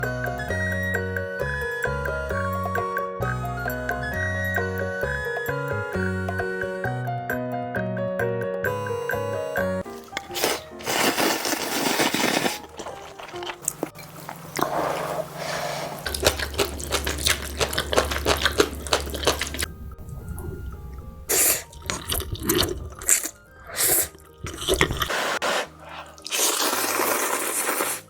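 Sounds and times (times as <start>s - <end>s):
background music with bass: 0.0s - 10.8s
person slurping noodles: 9.9s - 19.7s, 21.3s - 28.0s.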